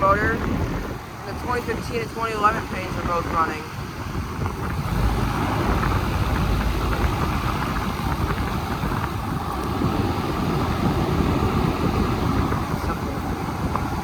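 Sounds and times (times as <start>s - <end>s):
air conditioner units humming: 0.0s - 14.0s.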